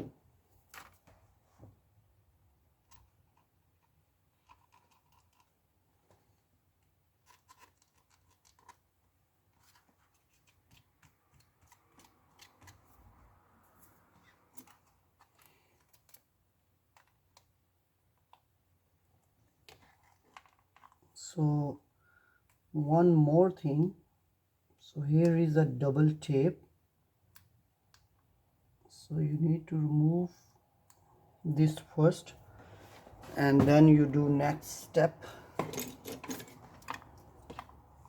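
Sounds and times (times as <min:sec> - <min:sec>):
light scratching: 0:35.6 - 0:37.9.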